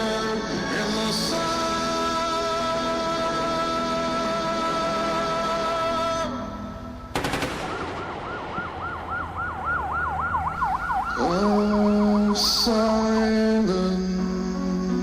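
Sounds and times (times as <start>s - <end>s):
sharp cracks: 7.1s - 9.6s
siren warbling: 7.7s - 13.4s.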